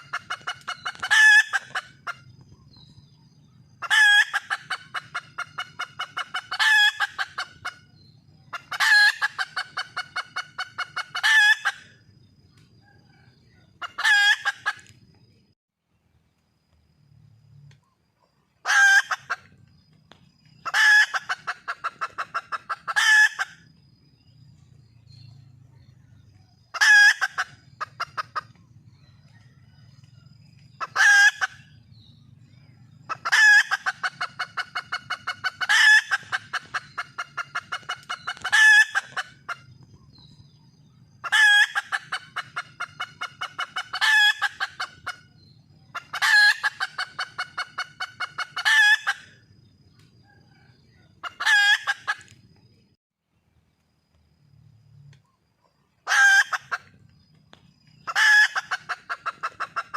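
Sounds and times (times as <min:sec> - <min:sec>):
hen squawking and clucking: 0:00.0 - 0:02.4, 0:03.6 - 0:12.0, 0:13.7 - 0:14.9, 0:18.6 - 0:19.6, 0:20.6 - 0:23.7, 0:26.7 - 0:28.6, 0:30.8 - 0:31.7, 0:33.1 - 0:39.7, 0:41.2 - 0:49.4, 0:51.2 - 0:52.3, 0:56.0 - 0:57.0, 0:58.0 - 0:59.9.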